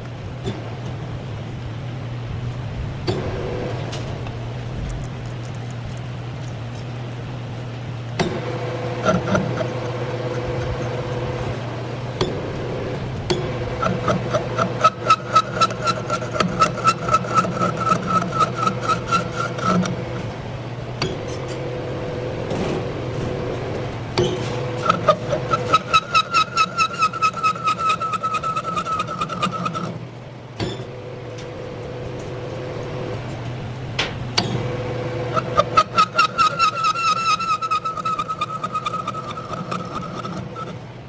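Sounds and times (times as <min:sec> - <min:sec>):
lathe humming: 0:00.0 - 0:41.0
tool scraping screw thread: 0:08.2 - 0:20.4, 0:21.0 - 0:30.0, 0:34.4 - 0:40.8.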